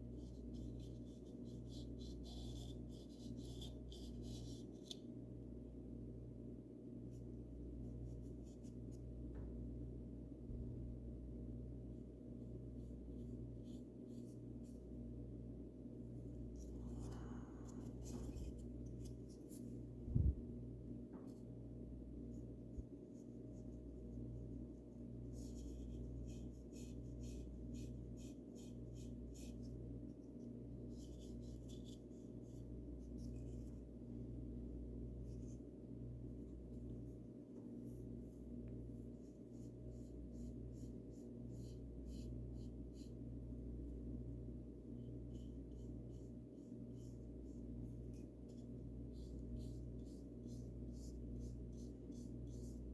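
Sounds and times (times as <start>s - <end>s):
paintbrush strokes: 0.0s - 5.0s, 12.7s - 15.0s, 16.0s - 20.4s, 22.2s - 34.4s, 35.0s - 52.9s
steady low hum: 0.0s - 52.9s
low thump: 20.1s - 20.5s.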